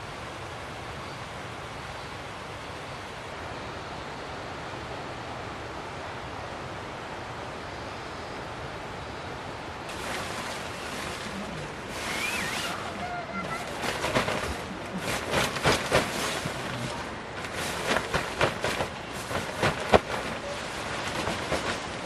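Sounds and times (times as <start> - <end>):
heavy rain hissing: 2.5 - 22.0.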